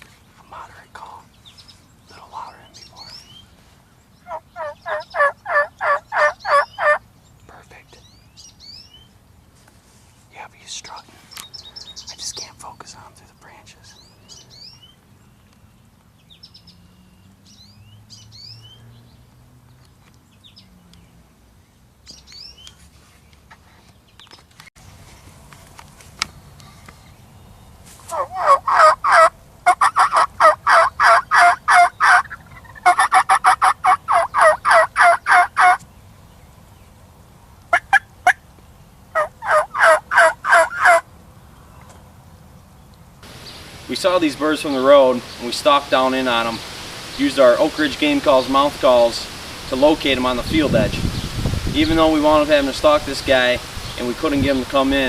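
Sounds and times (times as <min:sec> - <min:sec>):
small songbirds chirping: 0:00.0 - 0:25.6, 0:26.2 - 0:33.2, 0:33.9 - 0:40.0, 0:40.6 - 0:55.0
turkey calling: 0:04.2 - 0:07.0, 0:28.1 - 0:35.8, 0:37.7 - 0:38.4, 0:39.1 - 0:41.1.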